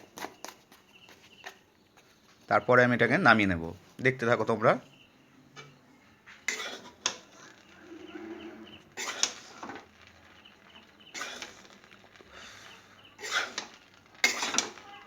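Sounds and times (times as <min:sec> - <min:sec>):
coconut frying in a pan: 0:06.1 - 0:15.0
utensil scraping a pan: 0:06.5 - 0:15.0.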